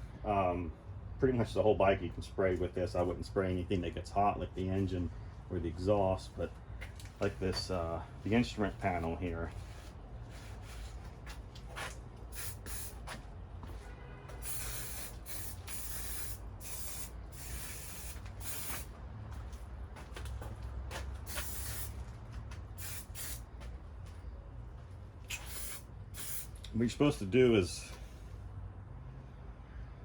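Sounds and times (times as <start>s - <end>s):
aerosol can spraying: 12.3s - 13.0s, 14.4s - 18.9s, 21.2s - 22.0s, 22.8s - 23.5s, 25.3s - 26.6s.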